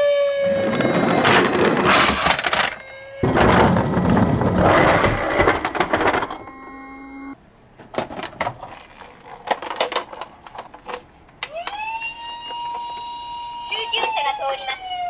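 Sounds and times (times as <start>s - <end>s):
toy cars clattering: 0.7s - 6.5s, 7.8s - 13.1s
electronic tone: 6.3s - 7.4s.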